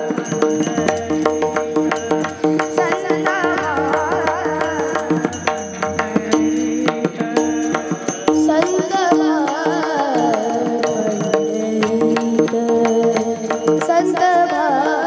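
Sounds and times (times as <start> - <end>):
hand drum beat: 0.0 - 15.0
person singing: 0.0 - 15.0
small cymbals: 0.0 - 15.0.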